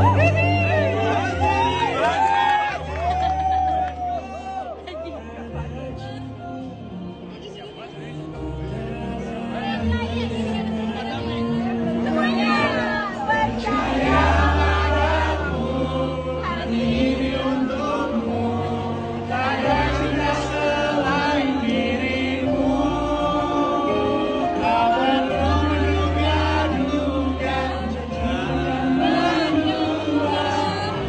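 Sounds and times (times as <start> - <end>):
voices singing pop ballad: 0.0 - 31.0.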